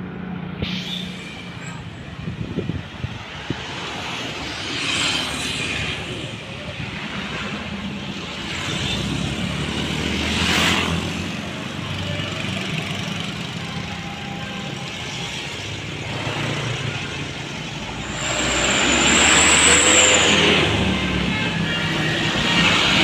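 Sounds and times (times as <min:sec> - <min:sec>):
bus engine running: 0:15.1 - 0:23.0.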